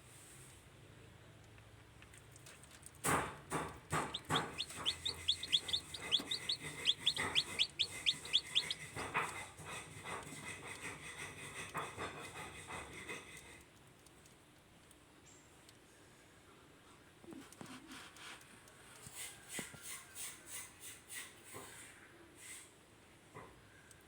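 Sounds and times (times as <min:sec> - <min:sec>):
sharp clicks and knocks: 0:03.0 - 0:09.4
chick peeping: 0:03.6 - 0:09.5.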